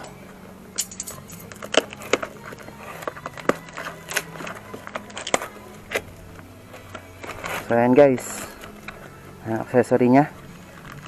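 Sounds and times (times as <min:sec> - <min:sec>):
packaging being opened by hand: 0:01.1 - 0:09.2.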